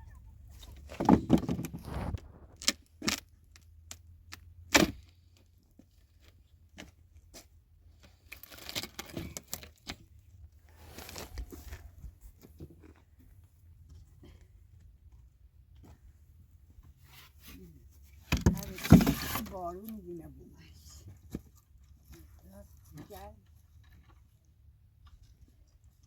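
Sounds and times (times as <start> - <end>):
rustling: 0.1 - 2.7, 7.4 - 13.4.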